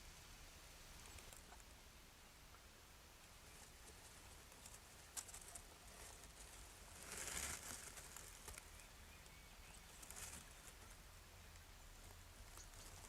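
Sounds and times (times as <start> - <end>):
animal ticks and patters: 3.2 - 13.0
short rustle: 3.5 - 8.7.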